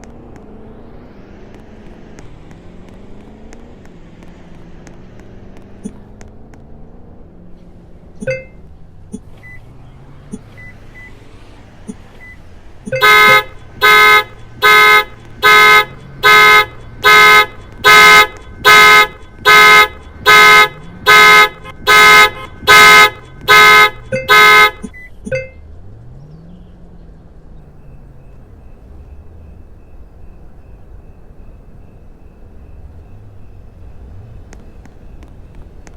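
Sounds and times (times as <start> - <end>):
car alarm honking: 8.2 - 8.6, 11.9 - 25.6, 27.7 - 35.9
faint beeps: 8.2 - 25.7, 27.7 - 35.9.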